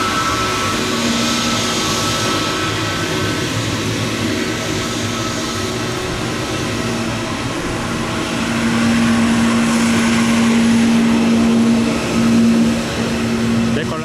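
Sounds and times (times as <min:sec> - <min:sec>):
jet engines on takeoff: 0:00.0 - 0:14.0.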